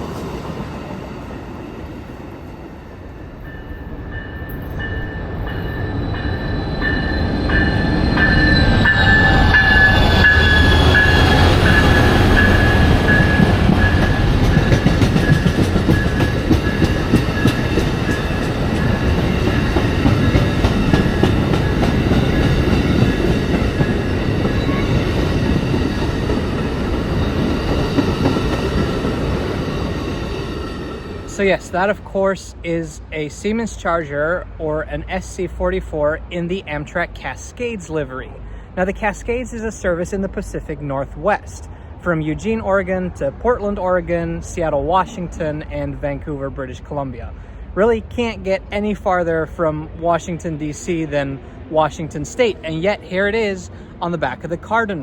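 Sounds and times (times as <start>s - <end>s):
train wheel squeal: 0.0s - 31.3s
train wheels clattering: 3.4s - 31.8s.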